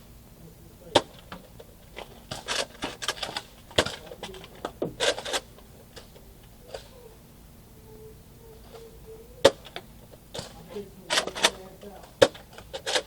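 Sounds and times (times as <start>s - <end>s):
toy blasters clicking: 1.0s - 7.1s, 8.6s - 13.0s.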